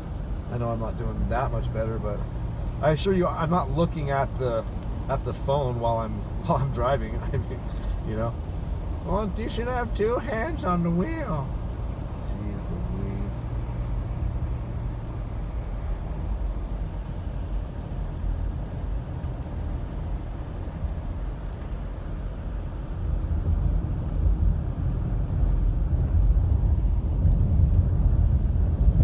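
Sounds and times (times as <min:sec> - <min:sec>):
car engine and road rumble: 0:00.0 - 0:29.0.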